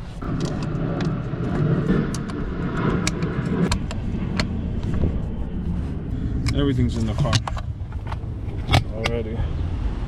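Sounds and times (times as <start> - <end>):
sharp clicks: 2.1 - 4.5.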